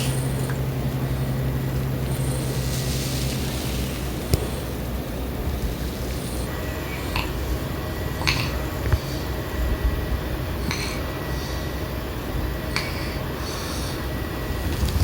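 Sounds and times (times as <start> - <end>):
baby snoring: 6.2 - 7.5, 8.1 - 9.3, 10.6 - 11.6.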